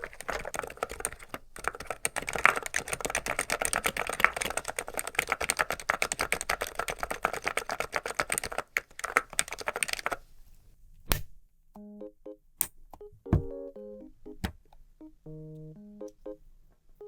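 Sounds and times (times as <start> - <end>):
fast keyboard typing: 0.0 - 10.2.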